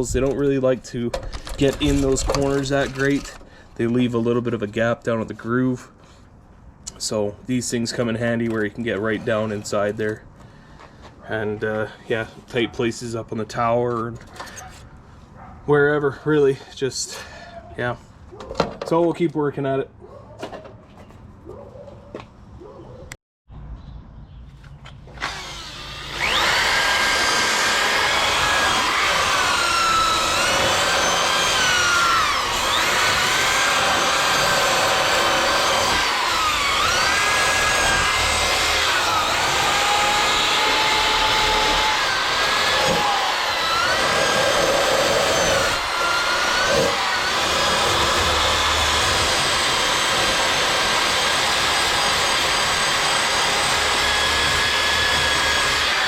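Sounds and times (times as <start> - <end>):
drill wire brush on steel: 25.2 - 56.0.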